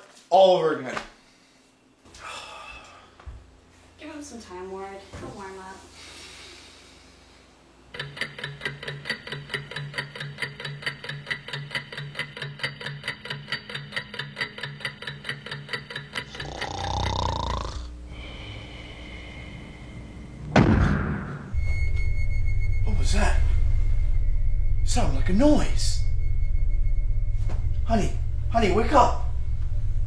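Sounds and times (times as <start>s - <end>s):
clock ticking fast: 7.9s - 16.6s
sudden loud bang: 20.5s - 21.6s
rising sound with low rumble: 21.5s - 30.0s.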